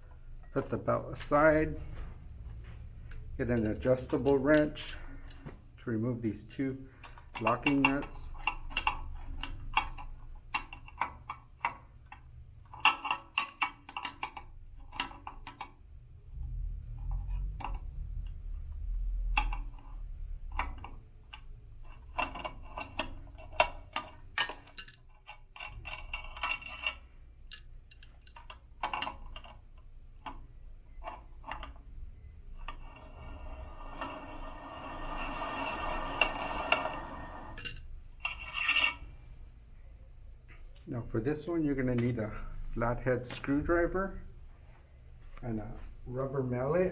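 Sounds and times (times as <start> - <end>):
wrench clinking against metal nuts: 3.1 - 5.4, 7.0 - 11.2, 20.6 - 29.6.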